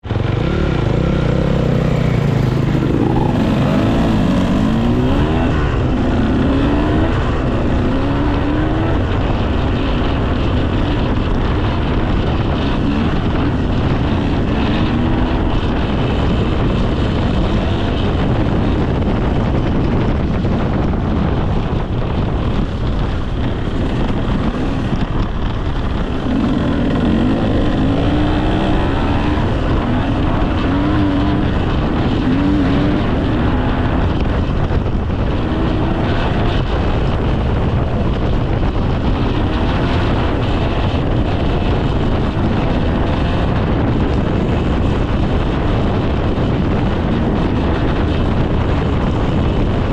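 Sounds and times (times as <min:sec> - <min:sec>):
dirt bike engine revving: 0:00.0 - 0:09.7, 0:23.8 - 0:34.4.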